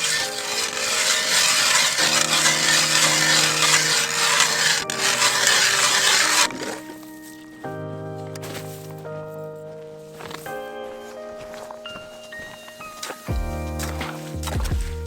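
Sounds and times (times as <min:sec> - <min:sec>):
harsh scraping grinding noise: 0:00.0 - 0:07.3
background music: 0:00.0 - 0:15.0.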